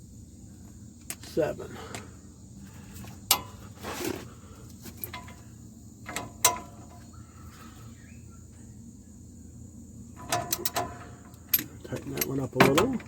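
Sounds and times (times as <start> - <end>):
crickets trilling: 0.0 - 13.0
handling rustle: 2.7 - 5.5
wrench clicking on bolts: 10.2 - 12.9.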